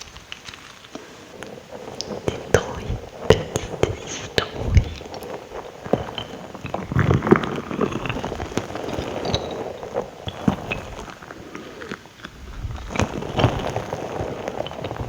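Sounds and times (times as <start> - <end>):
wet mouth sounds: 2.0 - 5.4, 14.6 - 15.0.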